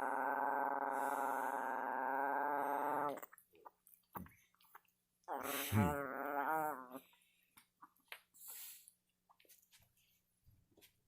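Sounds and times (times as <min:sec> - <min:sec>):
dog warbling growl: 0:00.0 - 0:03.3, 0:05.3 - 0:07.0.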